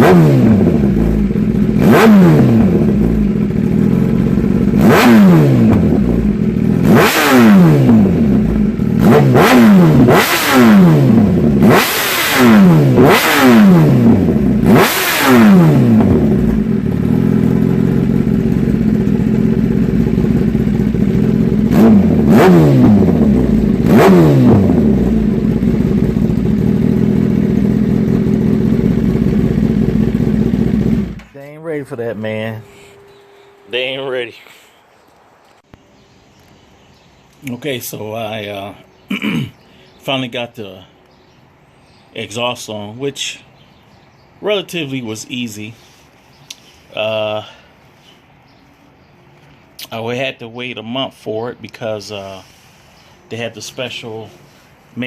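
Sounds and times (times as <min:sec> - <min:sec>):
motorcycle engine revving: 0:00.0 - 0:31.4
motorcycle engine idling: 0:00.4 - 0:09.4, 0:14.0 - 0:14.8, 0:15.4 - 0:31.4.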